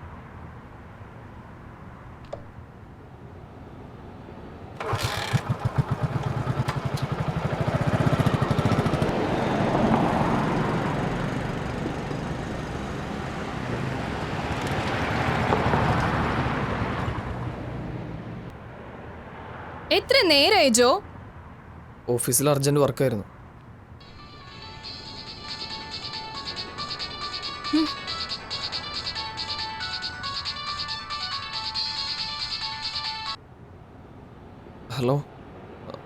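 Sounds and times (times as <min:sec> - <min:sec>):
vehicle engine starting and running: 0:04.8 - 0:18.6.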